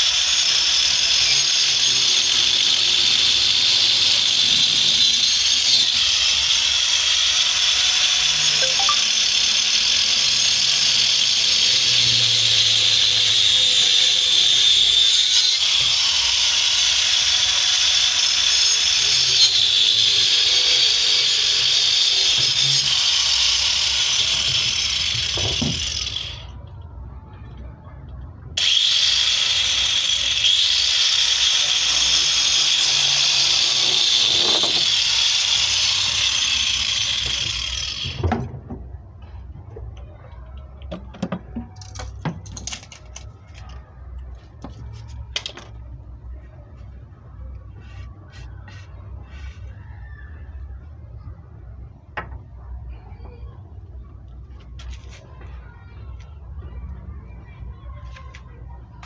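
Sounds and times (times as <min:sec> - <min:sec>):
power tool whining: 0:00.0 - 0:26.6, 0:28.6 - 0:38.4.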